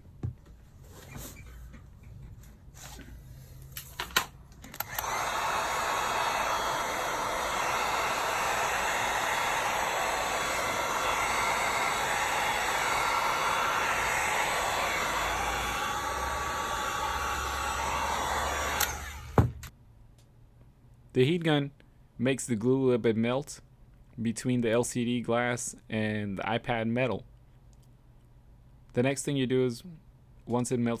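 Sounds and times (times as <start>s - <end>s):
heat gun switch click: 4.7s - 5.2s
heat gun blowing: 4.8s - 19.7s.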